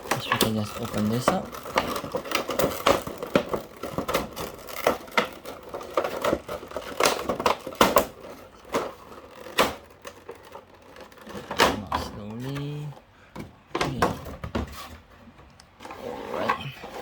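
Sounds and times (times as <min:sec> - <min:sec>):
packaging rustling and crinkling: 0:00.0 - 0:13.1.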